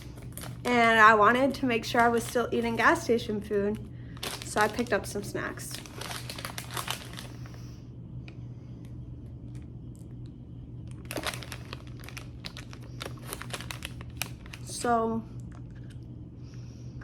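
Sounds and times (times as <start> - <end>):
plastic snack wrapper crinkling: 0.0 - 3.0, 4.1 - 7.6, 10.9 - 14.8.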